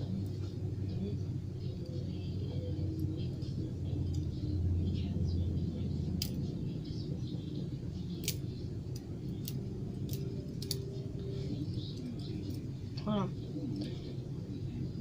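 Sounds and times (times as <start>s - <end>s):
steady low rumble: 0.0s - 15.0s
butterfly knife handles clacking: 6.0s - 6.5s, 8.2s - 10.9s.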